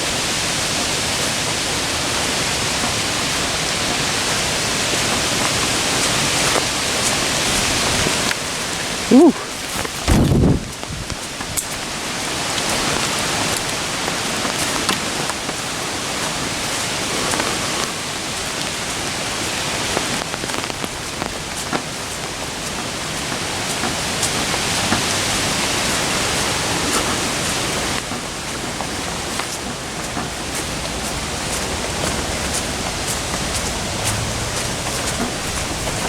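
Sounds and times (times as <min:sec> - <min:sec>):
sharp raindrop hits: 0:00.0 - 0:15.6
steady rain falling: 0:00.0 - 0:36.0.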